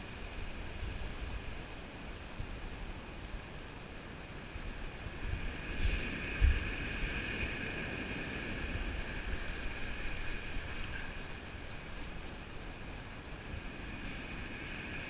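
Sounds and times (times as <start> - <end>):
surf on shingle beach: 0.0 - 15.0
wind buffeting microphone: 4.5 - 15.0.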